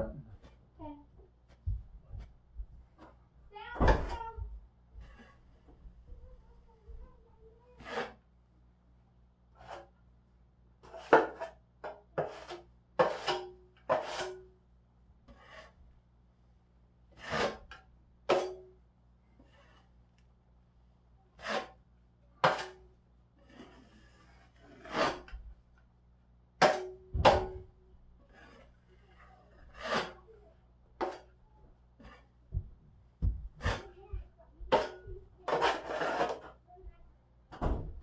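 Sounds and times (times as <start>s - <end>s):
drywall knife scraping compound: 7.8s - 8.3s, 9.6s - 10.0s, 10.8s - 14.5s, 15.3s - 15.9s, 17.1s - 18.7s, 19.4s - 20.2s, 21.3s - 25.5s, 26.6s - 27.6s, 28.2s - 31.4s, 32.0s - 32.4s, 33.6s - 34.0s, 34.7s - 36.6s.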